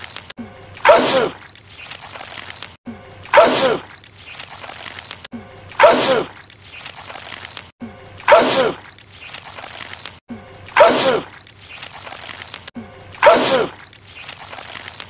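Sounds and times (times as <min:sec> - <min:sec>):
man sneezing: 0:08.3 - 0:08.8, 0:10.8 - 0:11.3, 0:13.2 - 0:13.8.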